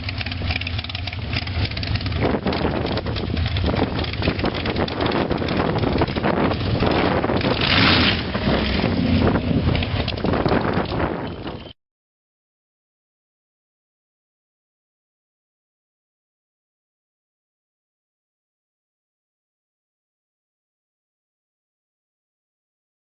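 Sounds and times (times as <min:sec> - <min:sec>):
vehicle engine running: 0:00.0 - 0:11.8
wind buffeting microphone: 0:01.7 - 0:11.7.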